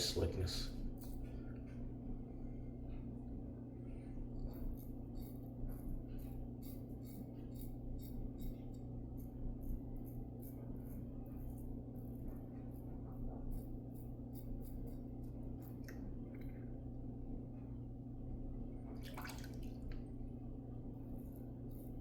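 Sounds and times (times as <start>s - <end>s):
low steady hum: 0.0s - 22.0s
razor scraping stubble: 4.4s - 16.2s.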